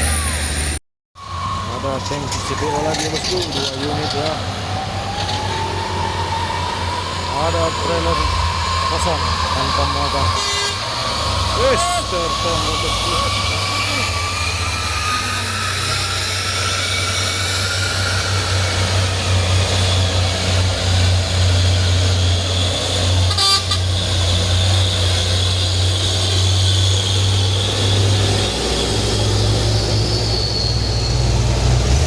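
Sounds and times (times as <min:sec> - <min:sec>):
truck horn toot: 0:10.3 - 0:11.0, 0:23.2 - 0:24.2.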